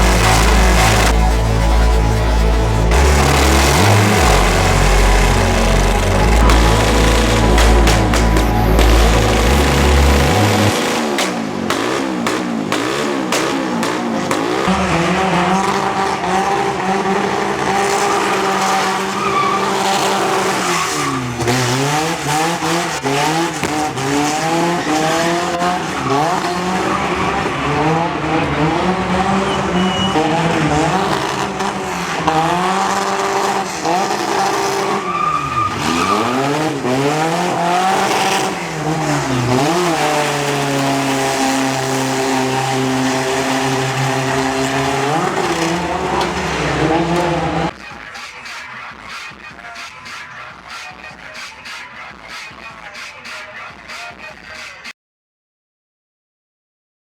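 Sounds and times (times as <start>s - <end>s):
car engine revving hard: 0.0s - 47.7s
tyres squealing: 12.7s - 54.2s.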